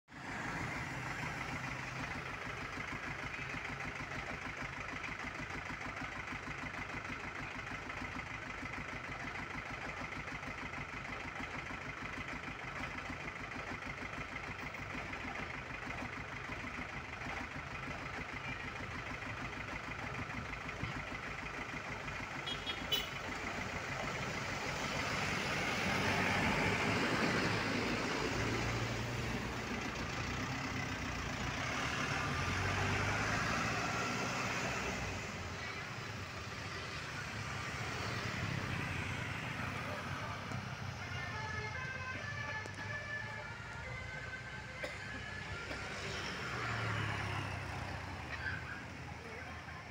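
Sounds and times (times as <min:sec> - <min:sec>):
bus engine idling: 0:00.1 - 0:49.9.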